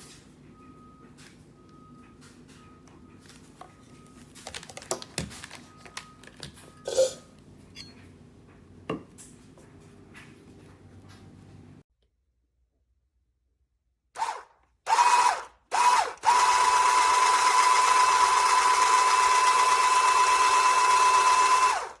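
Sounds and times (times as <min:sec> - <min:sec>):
packaging rustling: 0:04.0 - 0:06.6.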